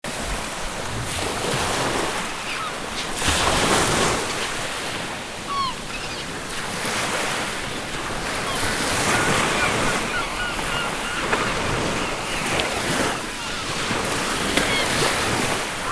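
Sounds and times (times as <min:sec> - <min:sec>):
ocean surf breaking: 0:00.1 - 0:15.9
seagull cries: 0:02.2 - 0:03.1, 0:05.4 - 0:06.4, 0:08.4 - 0:15.9.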